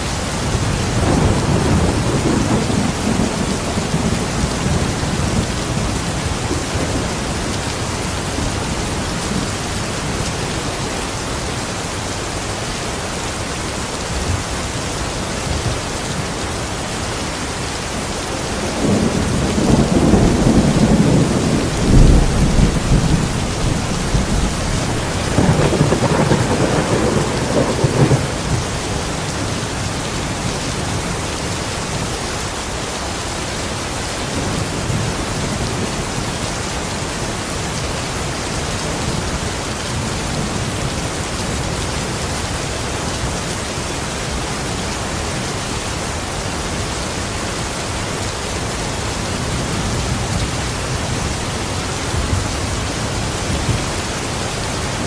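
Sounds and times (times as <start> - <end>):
heavy rain: 0.0 - 55.0
thunder rumbling: 0.4 - 10.2, 18.4 - 31.1.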